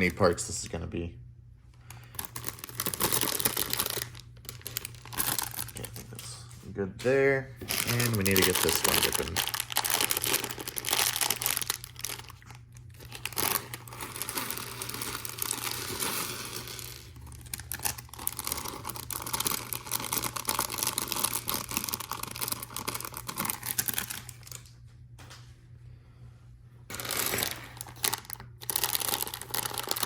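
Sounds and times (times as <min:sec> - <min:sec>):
plastic bags torn and crinkled: 0:01.9 - 0:06.3, 0:07.6 - 0:24.7, 0:26.9 - 0:30.0.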